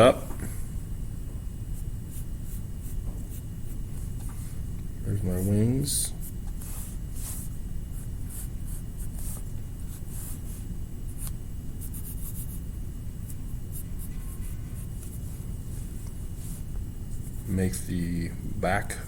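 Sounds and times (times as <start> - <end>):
steady low hum: 0.0 - 19.0
pen scratching on paper: 6.2 - 12.6, 13.2 - 15.4.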